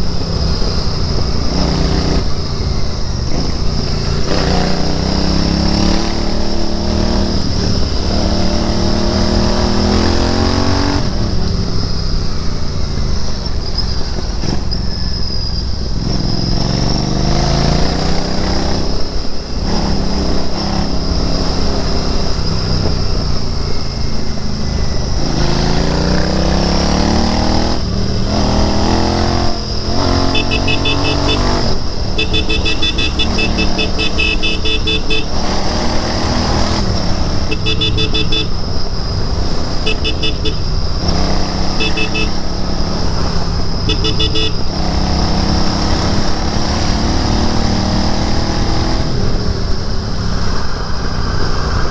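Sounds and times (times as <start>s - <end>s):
motorcycle engine accelerating: 0.0s - 13.6s, 16.0s - 50.6s
high pulsing horn-like beep: 29.9s - 36.6s, 37.3s - 38.7s, 39.7s - 40.8s, 41.6s - 42.4s, 43.8s - 44.8s.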